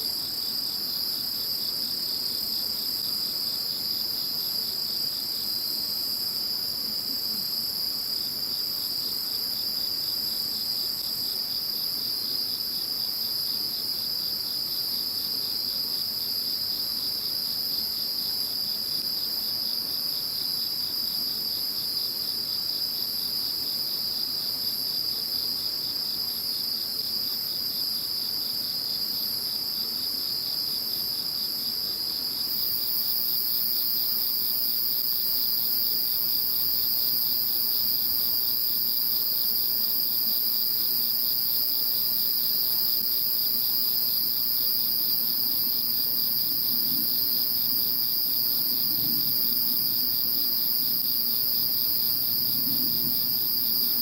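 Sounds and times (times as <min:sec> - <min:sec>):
crickets trilling: 0:22.8 - 0:54.0.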